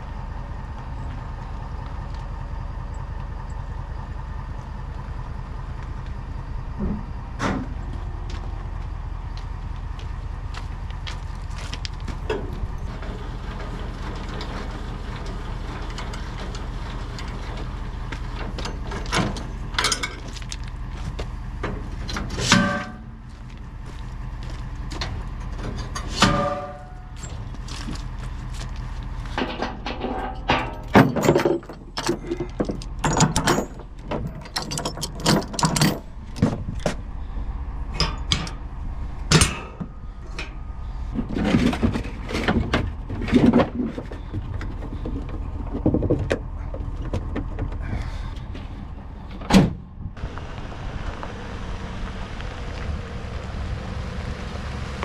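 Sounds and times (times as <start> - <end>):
vehicle engine rumbling: 0.0 - 55.0
sharp knocks and clanks: 21.2 - 23.3, 29.3 - 37.0, 39.3 - 40.6.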